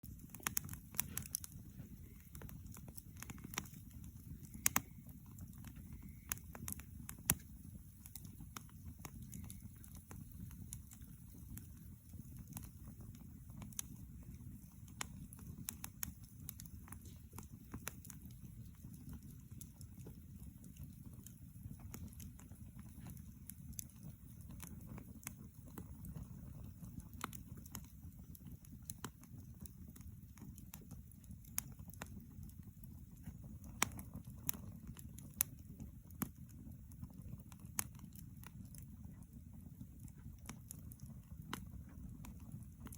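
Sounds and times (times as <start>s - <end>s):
campfire crackling: 0.0s - 42.9s.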